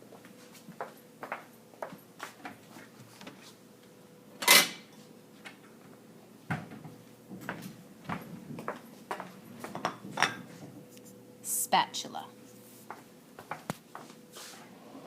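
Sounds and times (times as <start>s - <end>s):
dishes clattering: 9.7s - 10.6s.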